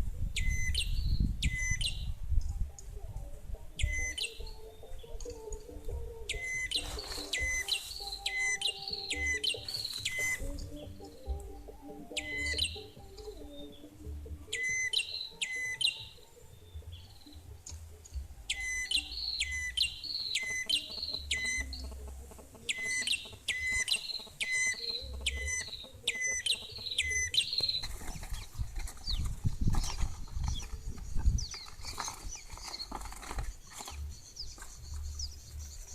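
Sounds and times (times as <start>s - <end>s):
songbirds chirping: 0.0s - 35.9s
rustling: 6.5s - 10.8s, 27.5s - 35.8s.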